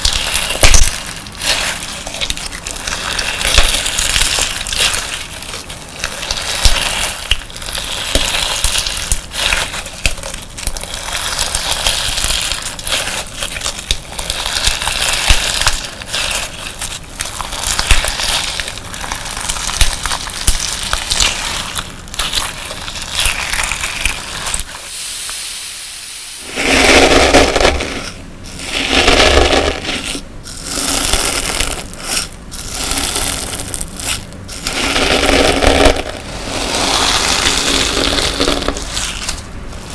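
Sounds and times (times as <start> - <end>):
slime squelching: 0.0 - 25.3, 26.4 - 39.9
slime with sand crackling: 0.0 - 39.9.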